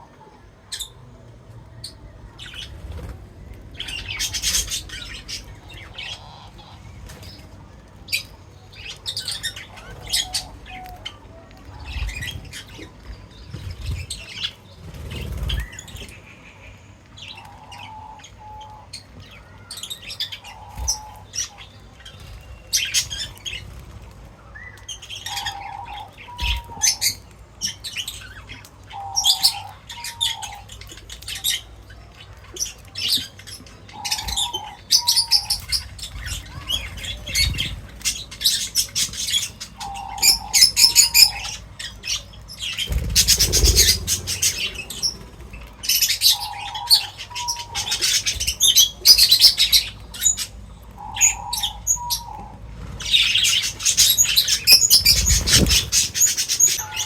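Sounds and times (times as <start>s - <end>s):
small birds chirping: 0.0s - 57.0s
wings flapping: 13.5s - 16.2s, 42.5s - 46.4s, 52.6s - 57.0s.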